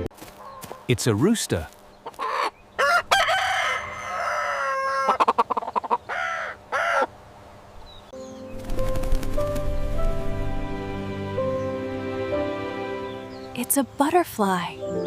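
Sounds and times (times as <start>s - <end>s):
rooster crowing: 2.3s - 5.4s, 6.1s - 7.1s.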